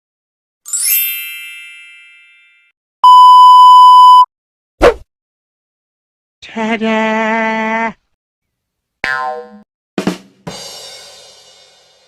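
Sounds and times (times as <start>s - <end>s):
censor bleep tone: 3.0s - 4.3s.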